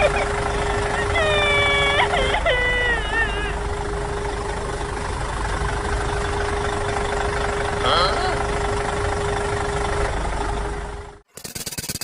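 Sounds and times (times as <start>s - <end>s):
voice-like cries: 0.0s - 3.7s
tractor engine idling: 0.0s - 11.3s.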